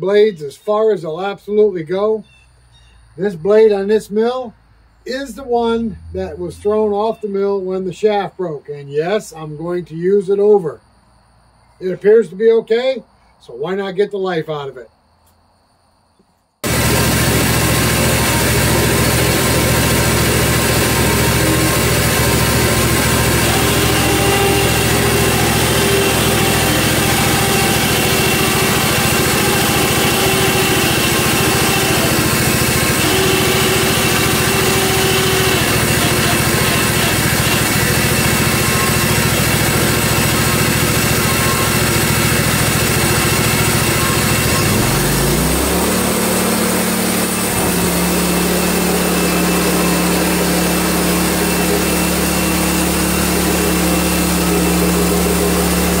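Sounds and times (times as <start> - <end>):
sawmill engine running: 5.2 - 7.2, 16.6 - 56.0.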